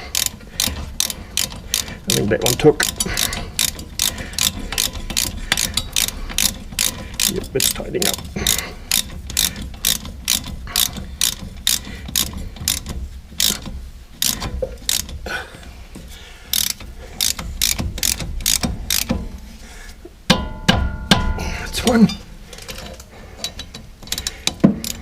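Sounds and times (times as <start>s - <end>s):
ratchet wrench clicking: 0.0s - 15.2s, 16.5s - 19.3s, 22.6s - 25.0s.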